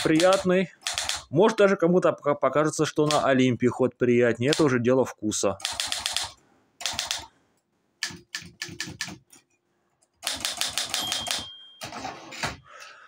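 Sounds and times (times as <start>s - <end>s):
typewriter keys striking: 0.0s - 1.3s, 5.6s - 7.2s, 8.0s - 9.2s, 10.2s - 12.6s
thin high ring: 11.2s - 11.9s.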